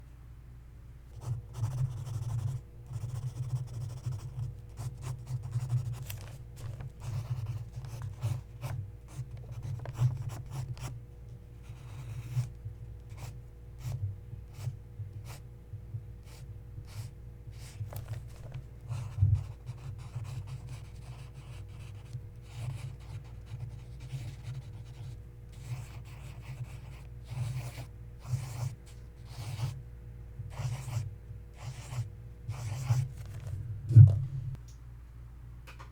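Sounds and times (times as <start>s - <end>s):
pencil scratching on paper: 1.2s - 10.9s, 11.6s - 12.5s, 16.2s - 29.8s, 30.5s - 31.0s, 31.6s - 33.5s.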